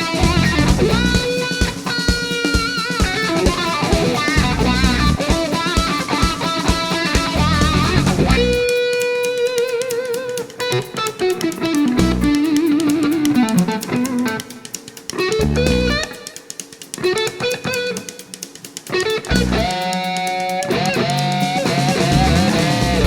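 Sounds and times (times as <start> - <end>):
low bass or drum hits: 0.0 - 1.3, 4.4 - 5.2.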